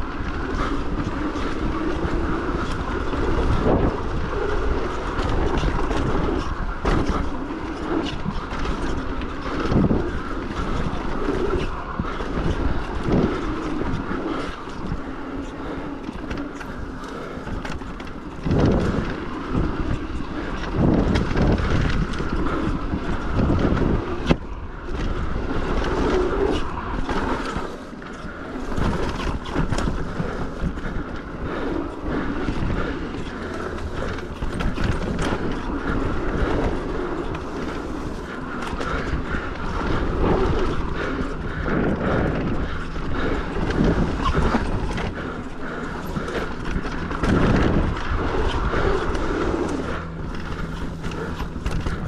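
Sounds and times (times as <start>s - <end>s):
bike rattling and knocking: 0.0s - 52.0s
wind buffeting microphone: 0.0s - 52.0s
tyres rolling over dirt: 25.1s - 52.0s.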